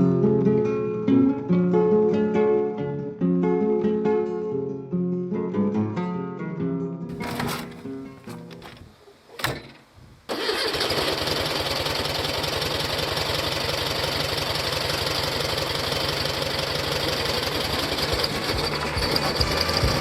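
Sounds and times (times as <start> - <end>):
engine running with even pulsing: 10.3 - 20.0.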